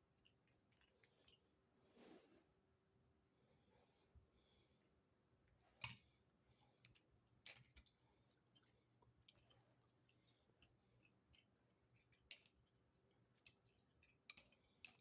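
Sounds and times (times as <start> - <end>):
small clicks and handling sounds: 6.8 - 15.0.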